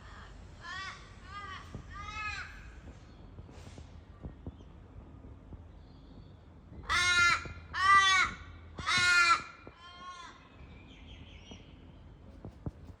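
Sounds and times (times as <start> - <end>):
crow cawing: 6.8 - 9.6.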